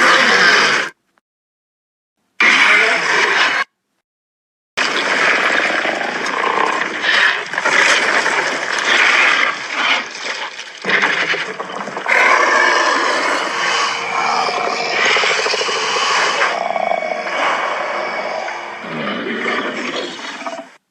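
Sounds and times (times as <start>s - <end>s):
monster roars and growls: 4.8s - 10.2s, 10.8s - 20.8s.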